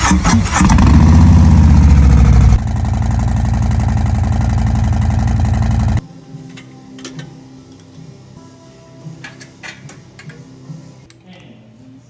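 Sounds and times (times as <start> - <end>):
motorcycle engine idling: 0.7 - 6.0.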